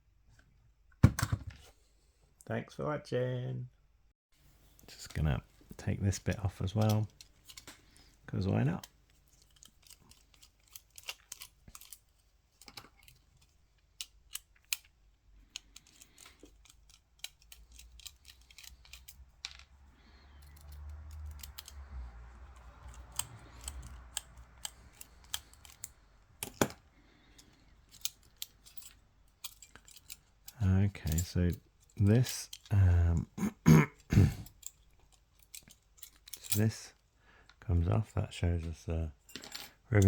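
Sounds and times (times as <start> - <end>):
clicks and taps of small parts: 6.2 - 7.9, 8.7 - 12.0, 12.6 - 19.8, 20.4 - 32.7, 34.4 - 36.7.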